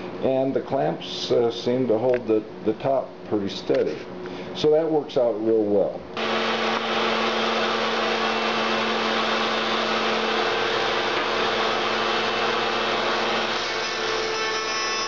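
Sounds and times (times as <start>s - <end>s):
router motor whine: 6.2s - 15.0s.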